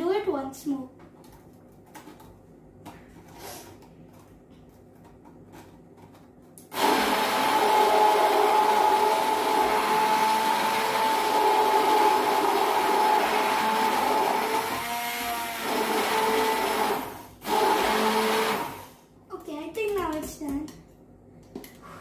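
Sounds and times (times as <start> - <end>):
electric blender running: 6.7 - 19.0.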